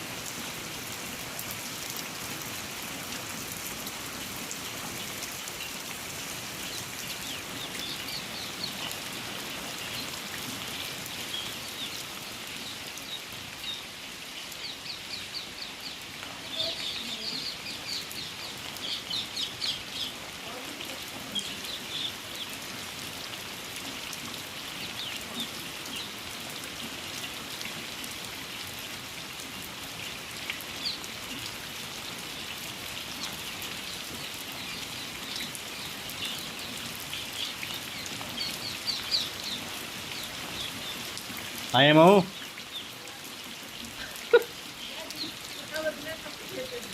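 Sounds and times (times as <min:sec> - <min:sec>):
steady rain falling: 0:00.0 - 0:46.9
birds chirping: 0:06.5 - 0:22.6, 0:32.3 - 0:46.9.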